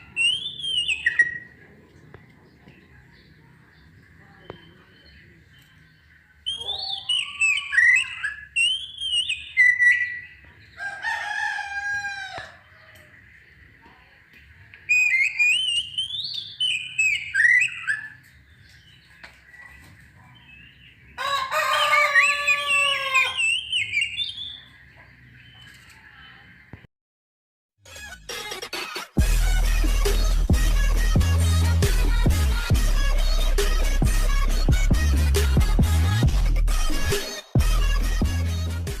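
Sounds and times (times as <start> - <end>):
bird whistled phrases: 0.0 - 1.6, 6.4 - 10.4, 14.8 - 18.2, 21.7 - 24.7
harsh buzzy bird call: 6.5 - 12.7, 21.2 - 24.6.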